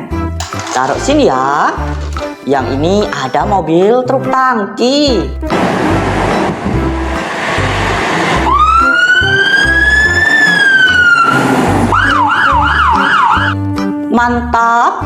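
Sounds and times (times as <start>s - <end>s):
background music with steady beat: 0.0s - 4.4s
siren wailing and yelping: 8.5s - 13.6s.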